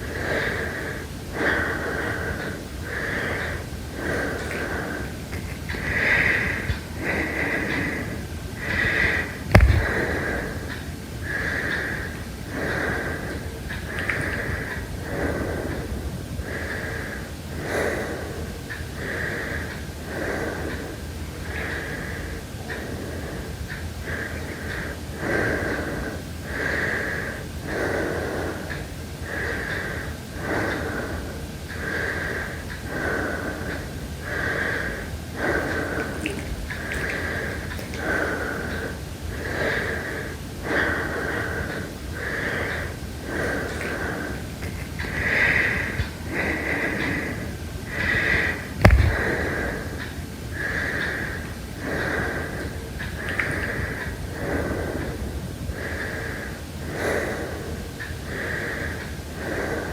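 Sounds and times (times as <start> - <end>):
heavy wheezy breathing: 0.0 - 59.9
sharp click with low thump: 9.6 - 9.9.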